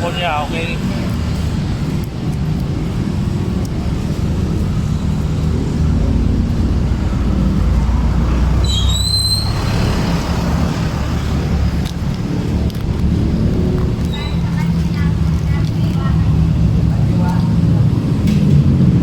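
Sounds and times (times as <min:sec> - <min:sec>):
road traffic rumble: 0:00.0 - 0:19.0
high-pitched squeal: 0:08.5 - 0:10.6.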